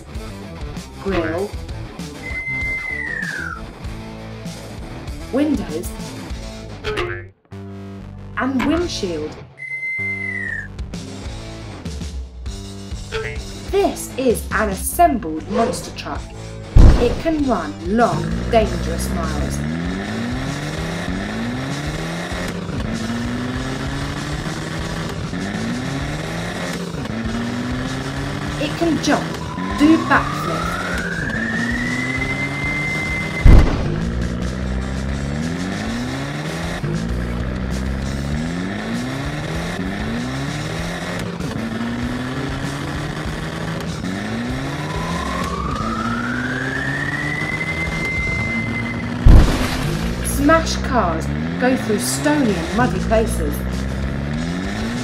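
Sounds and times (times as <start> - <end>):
truck engine accelerating through gears: 0.0 - 9.5, 10.1 - 55.0
rising whistle: 2.2 - 3.6, 9.6 - 10.7, 29.4 - 34.0, 44.6 - 49.2.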